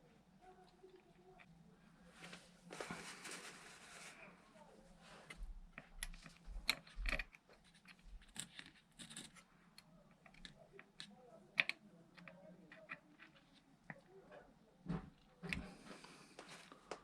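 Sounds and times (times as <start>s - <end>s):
small objects clicking and scraping: 5.3s - 14.0s.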